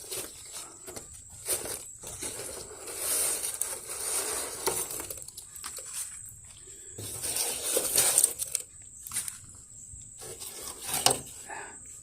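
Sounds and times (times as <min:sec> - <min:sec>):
wet leaves scooped from gutter: 0:00.0 - 0:06.2.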